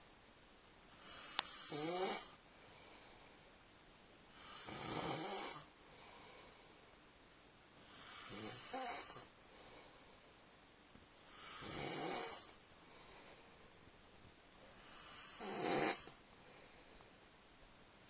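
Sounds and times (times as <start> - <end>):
man snoring loudly: 1.0 - 2.4, 4.4 - 5.7, 7.8 - 9.3, 11.3 - 12.6, 14.7 - 16.2.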